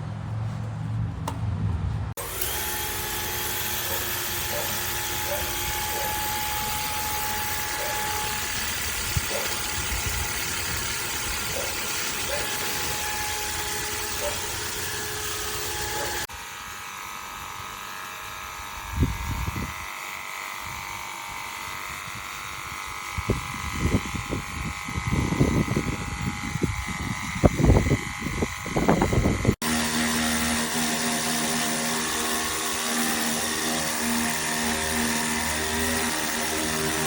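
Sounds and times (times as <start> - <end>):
electric pump motor whine: 2.2 - 37.0.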